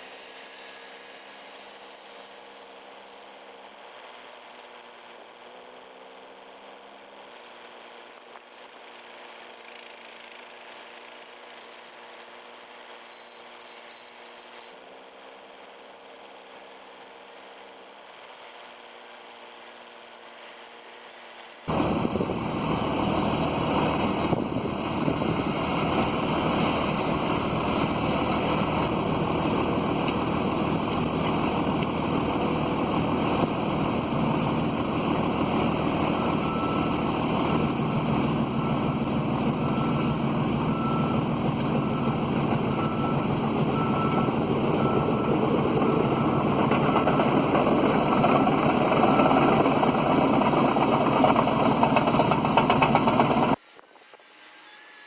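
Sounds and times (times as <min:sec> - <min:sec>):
short high beeps: 0:13.1 - 0:14.8
large engine running: 0:21.7 - 0:53.6.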